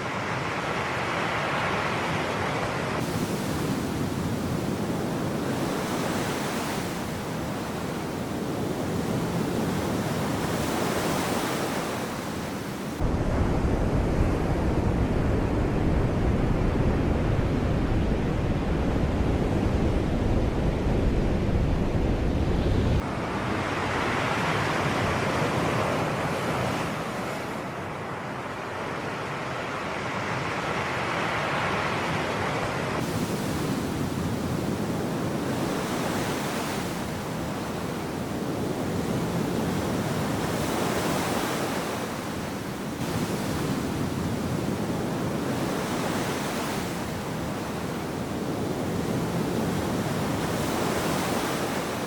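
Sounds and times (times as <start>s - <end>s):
sea waves washing onto shore: 30.8s - 52.0s.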